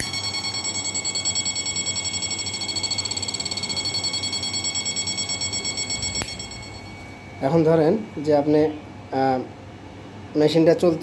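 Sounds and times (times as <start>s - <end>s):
high-pitched electronic buzz: 0.0s - 8.9s.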